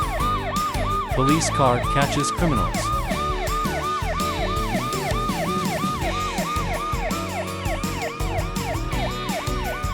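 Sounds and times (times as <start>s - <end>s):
police siren yelping: 0.0s - 9.9s.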